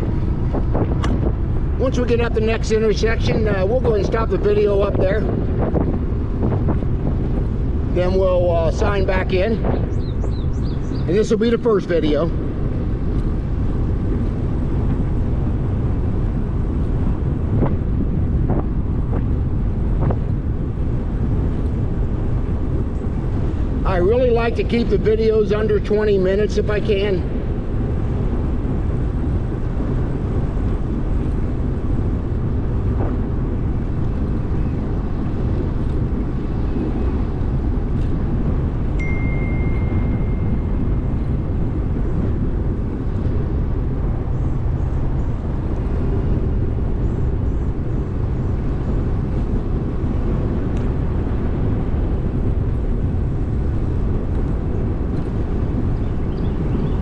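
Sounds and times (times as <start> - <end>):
wind on microphone: 0.0 - 57.0
high whistle-like tone: 39.0 - 40.7.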